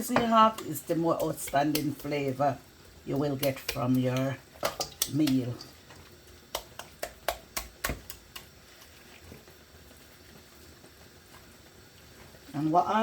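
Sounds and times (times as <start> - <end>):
utensil tapping a dish: 0.0 - 2.2, 3.2 - 5.7, 6.5 - 8.6.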